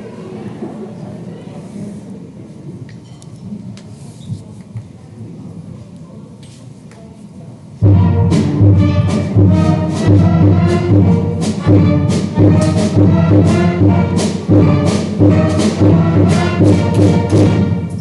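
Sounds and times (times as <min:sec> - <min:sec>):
brass band music: 0:07.8 - 0:18.0
driving drum beat: 0:07.8 - 0:18.0.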